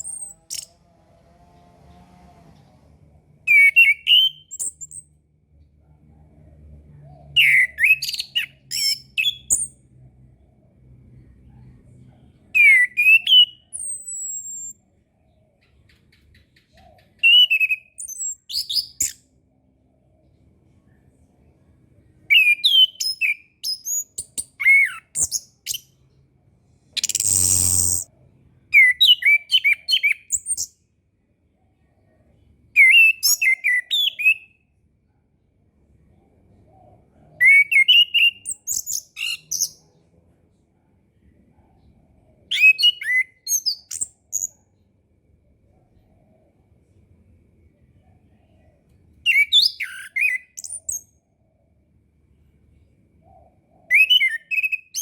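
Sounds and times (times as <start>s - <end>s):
bird singing whistled phrases: 3.5s - 5.1s, 7.4s - 9.8s, 12.6s - 14.8s, 17.2s - 19.2s, 22.3s - 25.8s, 27.0s - 28.1s, 28.7s - 30.7s, 32.8s - 34.6s, 37.4s - 39.8s, 42.5s - 44.6s, 49.2s - 51.1s, 53.8s - 55.0s.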